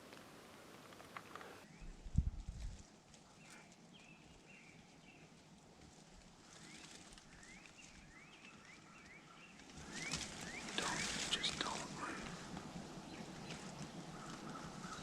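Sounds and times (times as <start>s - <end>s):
faint songbird calls: 6.4s - 15.0s.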